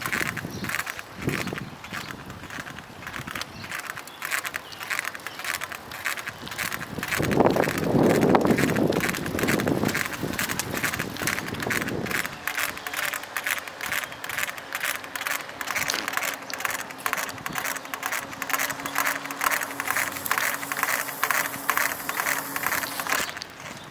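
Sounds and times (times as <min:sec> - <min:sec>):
bicycle drivetrain clicking and scraping: 0:00.0 - 0:23.9.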